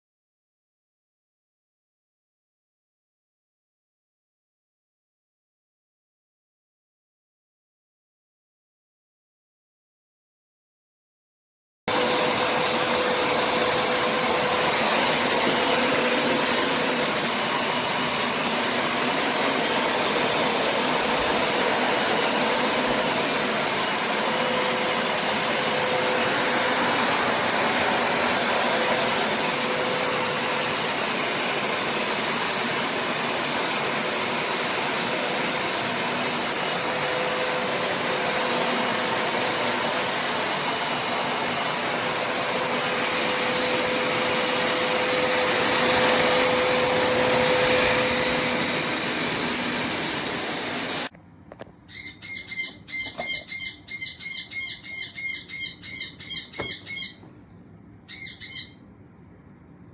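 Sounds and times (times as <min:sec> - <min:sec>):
carpet cleaner motor drone: 0:11.9 - 0:57.4.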